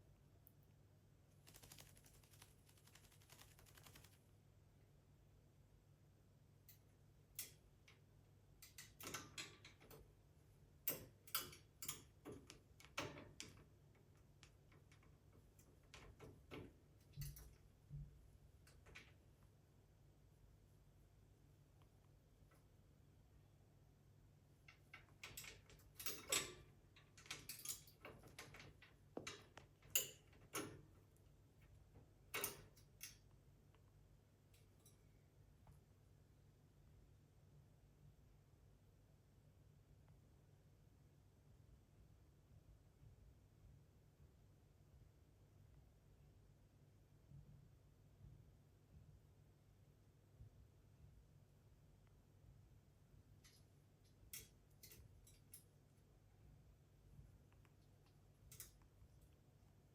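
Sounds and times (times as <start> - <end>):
faint clicks and knocks: 6.6 - 19.6, 24.5 - 35.9, 53.3 - 56.2, 57.1 - 59.9
irregular clicks and taps: 27.2 - 30.9.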